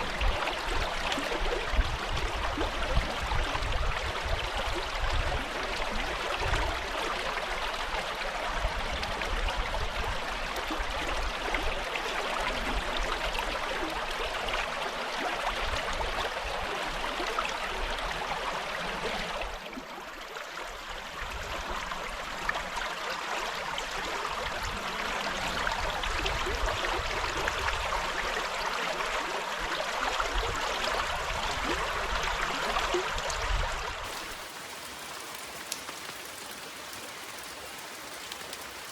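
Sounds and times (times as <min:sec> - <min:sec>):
river water rushing over rocks: 0:34.1 - 0:38.9.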